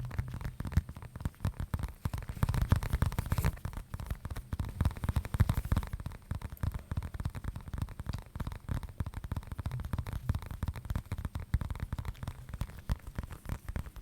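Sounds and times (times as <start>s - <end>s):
fingers tapping and scratching: 0.0s - 14.0s.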